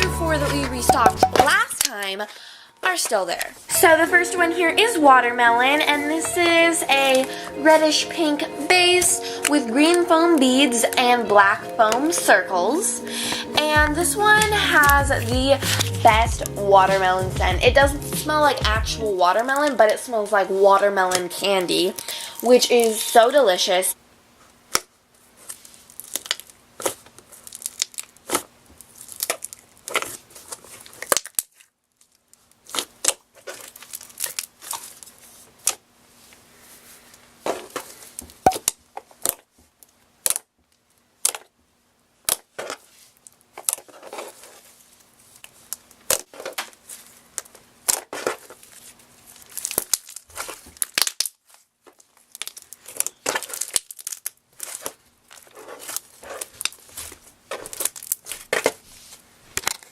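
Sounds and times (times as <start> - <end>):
foam beads crunching in slime: 25.4 - 35.8, 47.8 - 59.7.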